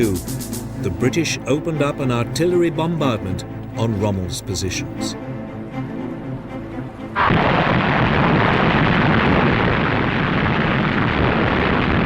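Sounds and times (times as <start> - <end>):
artillery gunfire and explosions: 7.2 - 12.0.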